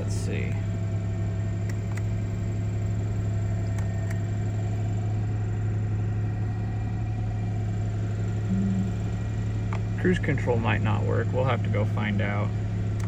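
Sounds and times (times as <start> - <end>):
car engine running: 0.0 - 13.0.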